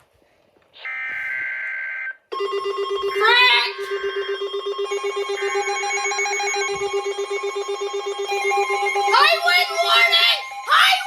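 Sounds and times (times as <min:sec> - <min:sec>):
rapidly pulsing electronic alarm: 0:00.8 - 0:11.0
steady higher tones: 0:02.6 - 0:11.0.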